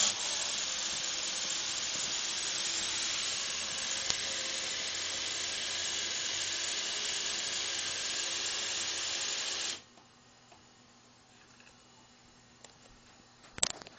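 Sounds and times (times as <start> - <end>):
machine whirring hiss: 0.0 - 9.9.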